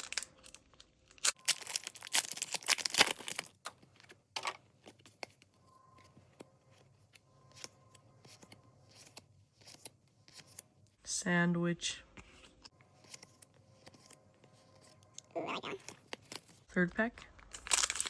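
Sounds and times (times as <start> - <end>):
wrapper tearing open: 0.0 - 3.5.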